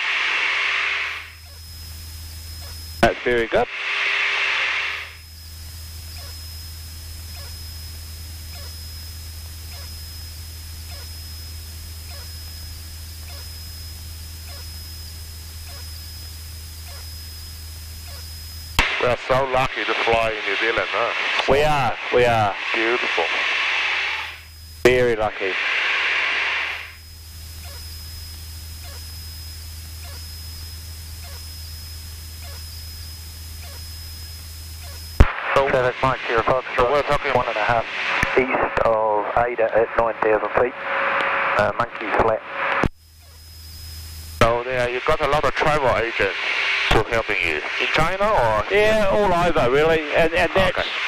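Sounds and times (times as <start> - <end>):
propeller aircraft engine droning: 0.0 - 51.0
thin high whine: 0.0 - 51.0.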